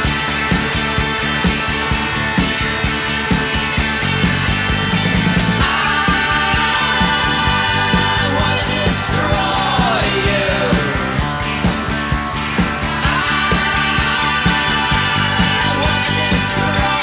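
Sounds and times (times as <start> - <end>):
rock music with electric guitar: 0.0 - 17.0
person singing: 5.6 - 11.1, 13.0 - 17.0.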